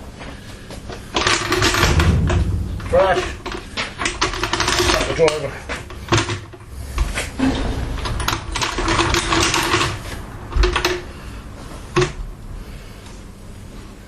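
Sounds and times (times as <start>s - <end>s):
sharp metallic knocks: 1.8s - 5.0s.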